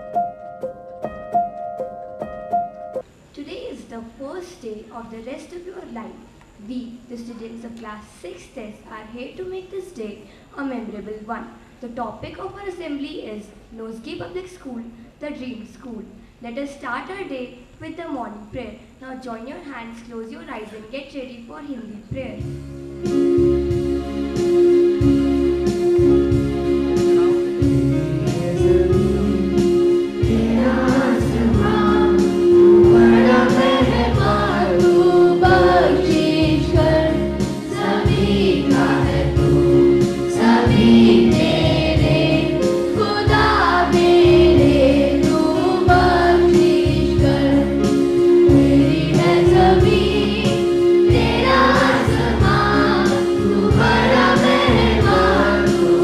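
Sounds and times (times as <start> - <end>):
sustained instrumental notes: 22.5 - 56.0
chorus singing a prayer: 28.2 - 56.0.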